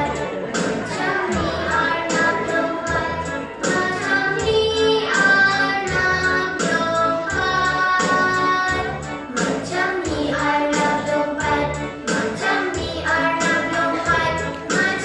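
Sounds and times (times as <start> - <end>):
upbeat children's song: 0.0 - 15.0.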